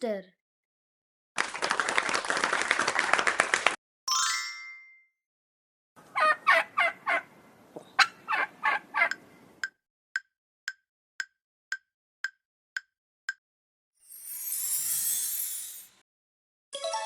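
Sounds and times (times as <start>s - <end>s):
turkey gobbling: 6.1s - 7.3s, 8.0s - 9.2s.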